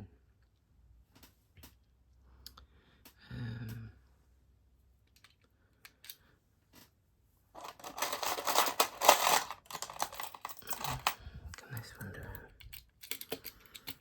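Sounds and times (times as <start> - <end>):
metal tools clinking and rattling: 7.6 - 14.0.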